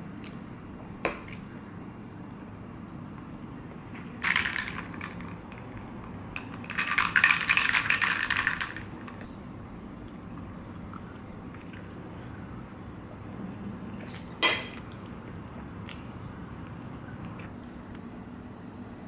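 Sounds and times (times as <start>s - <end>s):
small hard objects rattling: 6.6s - 8.9s.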